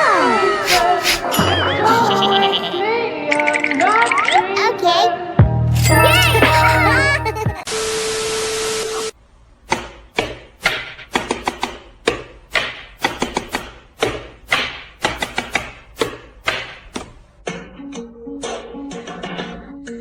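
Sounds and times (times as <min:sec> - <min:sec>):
knife chopping on cutting board: 0:09.7 - 0:17.1.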